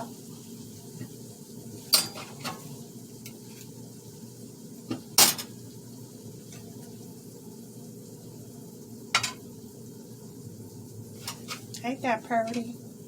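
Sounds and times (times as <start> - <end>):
metal utensils clinking on plate: 1.9 - 2.6.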